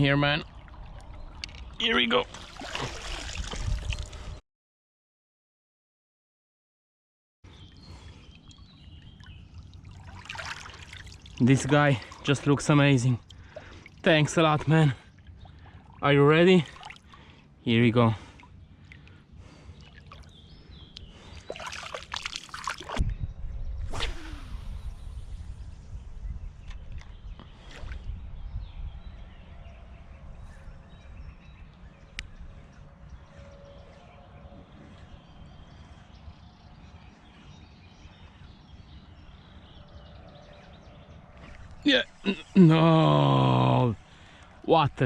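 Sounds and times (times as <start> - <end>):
water splashing: 0.5 - 4.2, 9.2 - 12.5, 16.6 - 17.3, 21.3 - 23.0
wind rumble on microphone: 2.6 - 4.4, 23.0 - 41.9
small birds chirping: 7.5 - 45.0.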